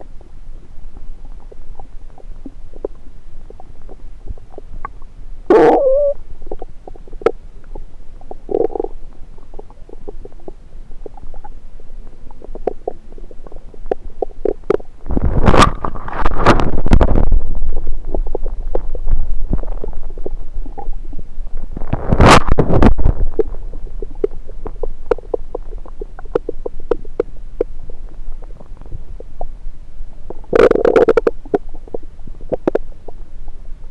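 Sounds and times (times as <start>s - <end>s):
stomach gurgling: 0.0s - 33.9s
long rumbling gurgles: 3.8s - 7.2s, 12.2s - 33.9s
small pops and bubbling: 4.2s - 29.5s, 30.3s - 33.2s.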